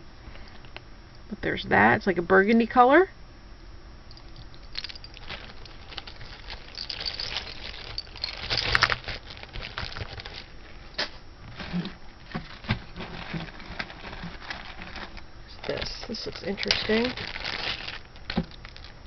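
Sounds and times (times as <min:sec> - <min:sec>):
jewelry clicking and rattling: 0:04.1 - 0:09.0
plastic bags crinkling: 0:04.1 - 0:19.0.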